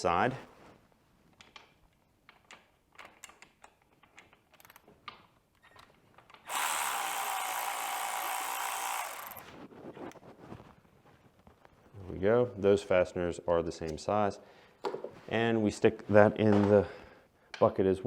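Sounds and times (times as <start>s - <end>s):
ratchet wrench ratcheting: 6.4s - 9.4s.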